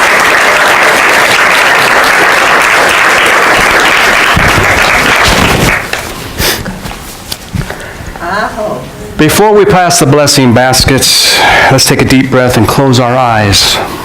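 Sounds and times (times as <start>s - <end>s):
audience applauding: 0.0s - 6.1s.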